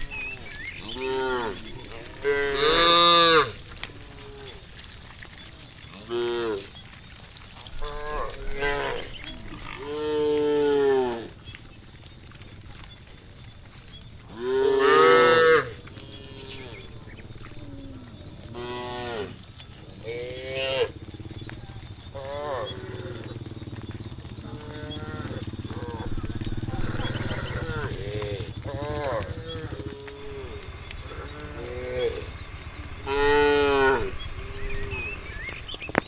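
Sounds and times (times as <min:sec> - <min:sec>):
cows mooing: 0:00.7 - 0:04.6, 0:07.8 - 0:11.5, 0:14.2 - 0:35.2.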